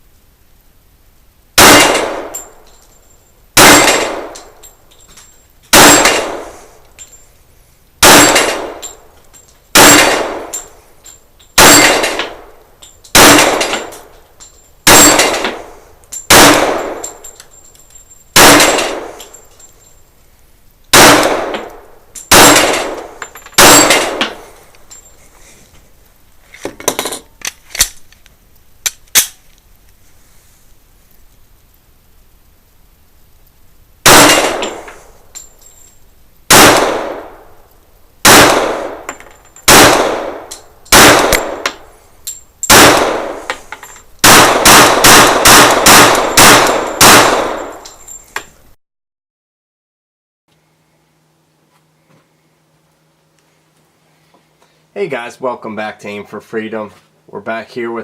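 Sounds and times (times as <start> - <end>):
pistol shots: 1.6 - 2.5, 3.6 - 4.5, 5.7 - 6.5, 8.0 - 9.0, 9.7 - 10.7, 11.6 - 12.5, 13.1 - 14.1, 14.9 - 15.6, 16.3 - 17.2, 18.4 - 19.4, 20.9 - 24.4, 34.0 - 35.0, 36.5 - 37.5, 38.2 - 41.8, 42.7 - 43.6, 44.2 - 47.8
quiet sharp cracks and clicks: 1.6 - 3.0, 3.6 - 7.2, 8.0 - 19.8, 20.7 - 25.0, 27.1 - 30.0, 31.0 - 48.6.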